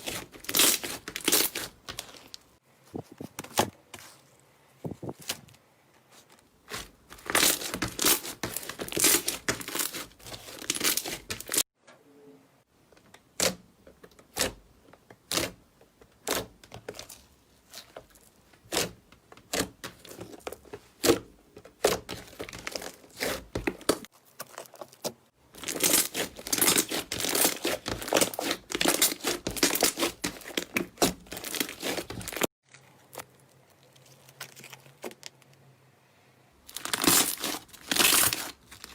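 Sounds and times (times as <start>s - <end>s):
slime crackling and popping: 0.0s - 2.4s, 21.8s - 32.4s, 36.7s - 38.9s.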